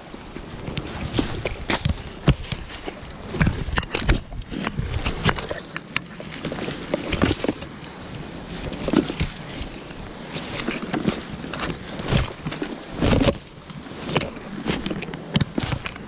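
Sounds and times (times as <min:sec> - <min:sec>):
sharp clicks and knocks: 0:00.4 - 0:07.7.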